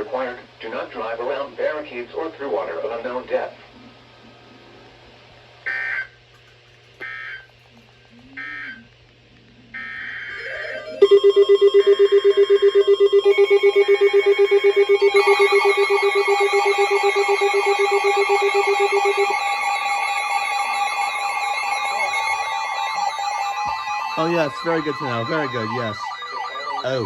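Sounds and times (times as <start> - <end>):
emergency alert data bursts: 7.0 - 7.5, 9.8 - 27.0
steady alarm tones: 7.0 - 7.5, 8.4 - 8.9, 9.7 - 27.0
rapidly pulsing alert tone: 9.8 - 27.0
warbling high tone: 10.3 - 27.0.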